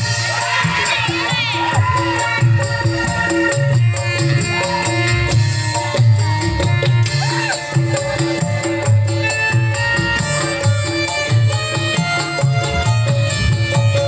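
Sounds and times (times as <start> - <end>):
drums beating a pattern: 0.0 - 14.0
rattling percussion: 0.0 - 14.0
wavering pitch-bending melody: 9.1 - 14.0.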